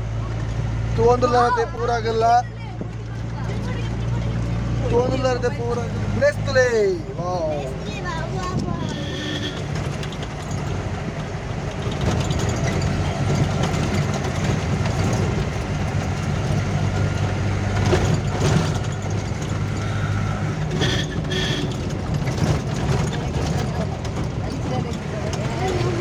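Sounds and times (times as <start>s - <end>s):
vehicle engine running: 0.0s - 26.0s
knocks and rattles: 7.9s - 26.0s.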